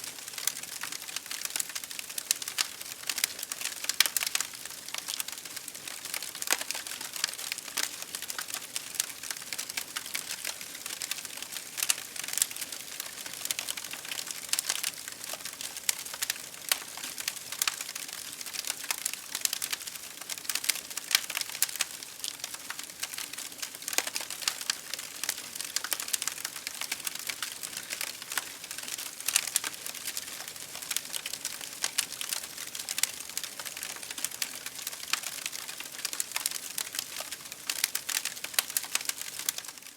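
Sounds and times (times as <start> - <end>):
campfire crackling and popping: 0.0 - 39.9.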